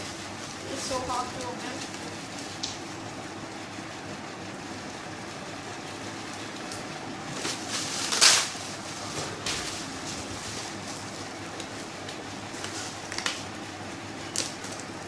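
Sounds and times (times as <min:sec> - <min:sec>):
bubble wrap crinkling: 0:06.6 - 0:15.0.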